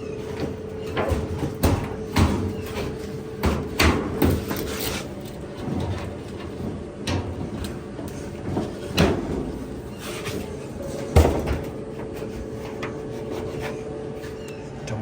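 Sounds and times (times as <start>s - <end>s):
steady hum: 0.0s - 15.0s
sheet metal clunks and knocks: 0.3s - 4.7s, 10.8s - 11.8s.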